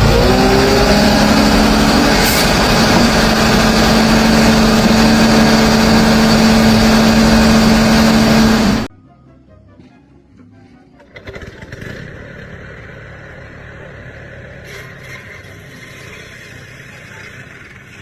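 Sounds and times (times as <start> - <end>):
engine droning: 0.0 - 8.9.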